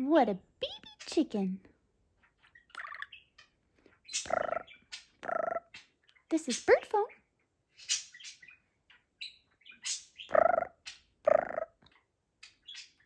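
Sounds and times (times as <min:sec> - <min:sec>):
budgerigar mimicking speech: 0:00.0 - 0:01.5, 0:02.7 - 0:03.2, 0:04.1 - 0:07.2, 0:10.1 - 0:12.0
budgerigar chirping and warbling: 0:02.2 - 0:07.2, 0:07.8 - 0:13.0.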